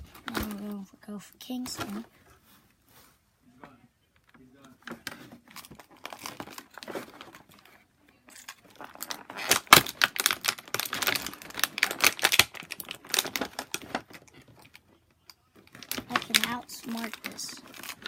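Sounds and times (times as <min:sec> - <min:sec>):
plastic packaging crackling and clicking: 0:04.2 - 0:18.0.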